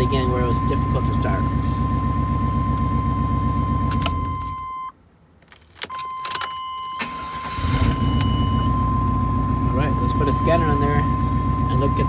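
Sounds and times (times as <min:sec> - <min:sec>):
high warning tone: 0:00.0 - 0:04.9
car engine cranking on starter: 0:00.1 - 0:04.7, 0:05.6 - 0:09.3
ignition key clicks: 0:03.8 - 0:04.7, 0:05.4 - 0:08.5.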